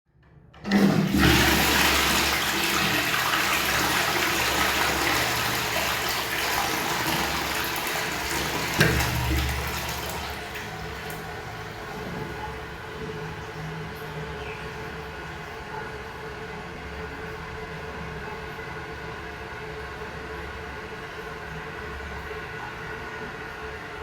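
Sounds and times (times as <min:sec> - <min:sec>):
toilet flush water rushing: 0:00.6 - 0:14.8.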